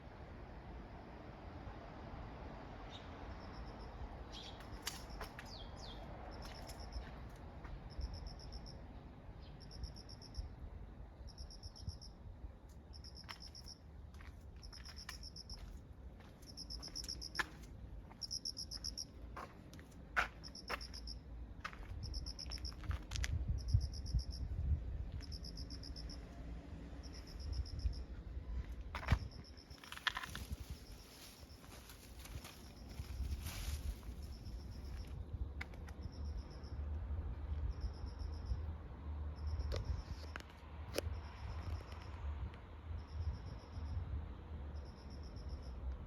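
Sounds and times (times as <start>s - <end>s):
insect chirping: 3.3s - 7.1s, 7.8s - 10.6s, 11.2s - 19.2s, 20.4s - 22.9s, 23.5s - 28.2s, 29.0s - 35.3s, 35.9s - 36.9s, 37.6s - 38.7s, 44.7s - 45.8s.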